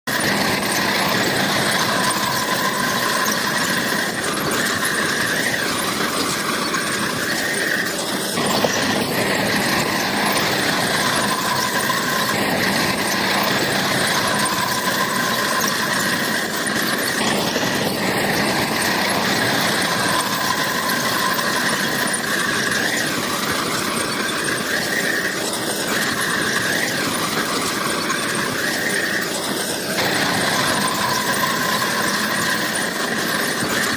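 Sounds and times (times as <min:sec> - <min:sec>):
bulldozer running: 0:00.1 - 0:33.9
high-pitched track squeal: 0:00.1 - 0:33.9.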